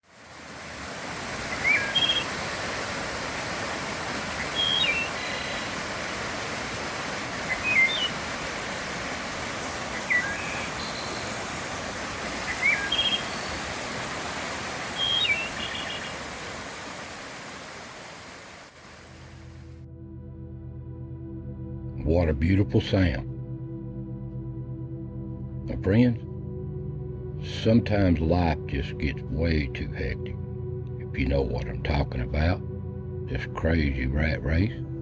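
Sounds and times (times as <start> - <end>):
running water rushing: 0.0 - 19.7
high-pitched bird calls: 1.5 - 2.4, 4.4 - 5.8, 7.4 - 8.2, 9.9 - 11.7, 12.4 - 13.7, 14.9 - 16.3.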